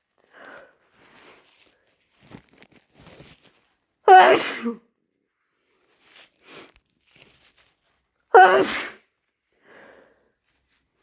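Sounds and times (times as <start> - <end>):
loud wet sneeze: 4.1 - 4.8, 8.3 - 9.1.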